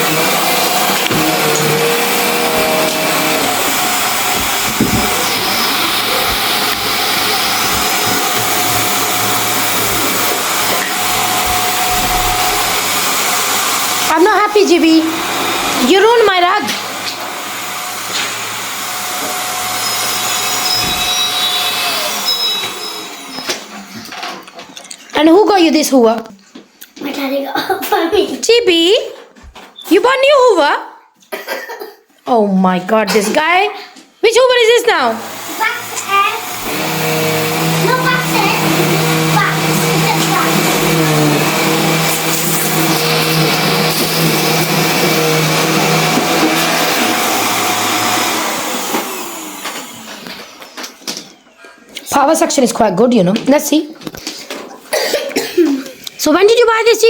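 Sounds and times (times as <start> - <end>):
vacuum cleaner running: 0.0 - 24.3, 34.3 - 52.4.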